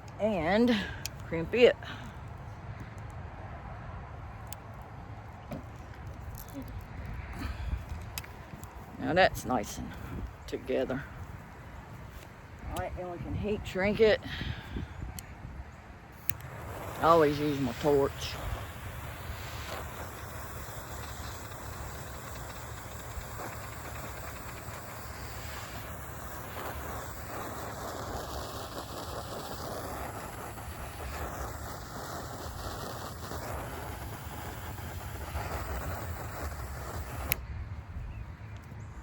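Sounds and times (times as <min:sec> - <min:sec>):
torch flame rushing: 0:05.6 - 0:37.5
torch shutoff click: 0:16.2 - 0:37.4.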